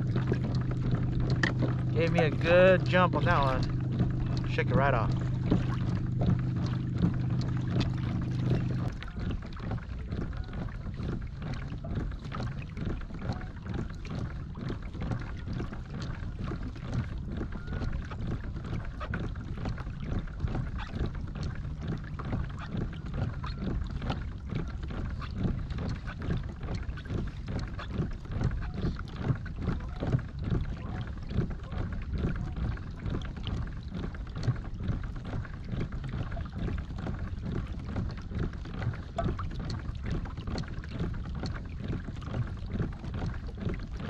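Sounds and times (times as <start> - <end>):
steady low hum: 0.0 - 18.2
small splashes: 0.0 - 44.0
water lapping against boat hull: 0.0 - 44.0.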